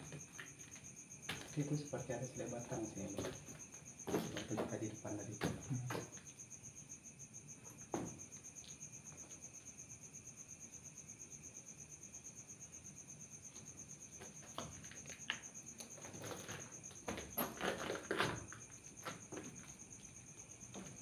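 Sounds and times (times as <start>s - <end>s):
crickets chirping: 0.0s - 21.0s
faint knocks and rustles: 2.6s - 6.3s.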